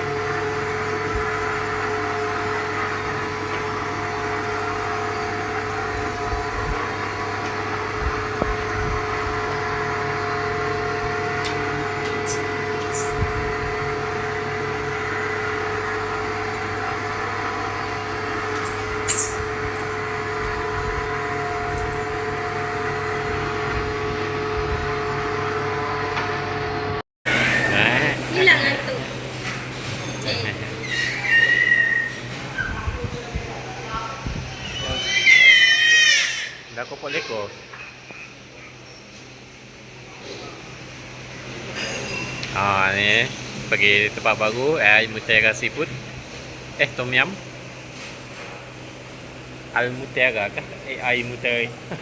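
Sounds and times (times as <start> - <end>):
machine hum with held tones: 0.0 - 36.9.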